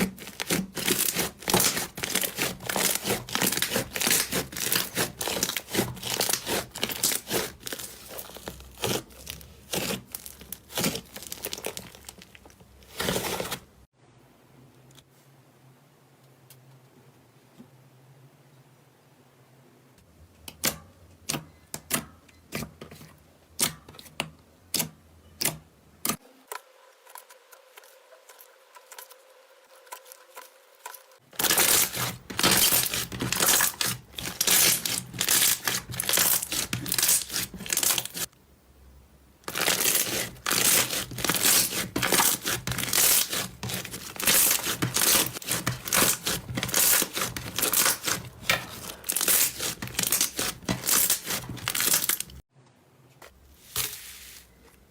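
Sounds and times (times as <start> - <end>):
slime crackling and popping: 0.0 - 13.2, 31.4 - 38.3, 39.5 - 52.4.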